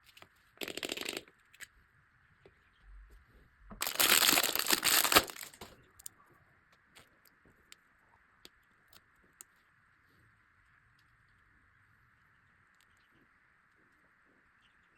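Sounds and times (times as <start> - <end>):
plastic tape crinkling: 3.8 - 5.8.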